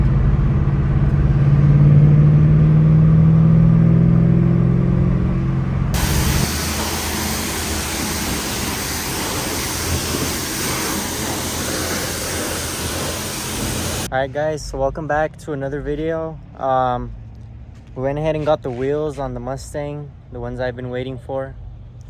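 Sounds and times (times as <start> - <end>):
car engine running: 1.1 - 14.1
steady hiss: 6.0 - 14.1.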